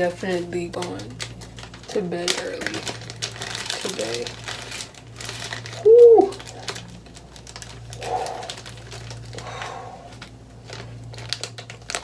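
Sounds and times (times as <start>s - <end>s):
woman exclaiming woo: 5.8s - 6.4s.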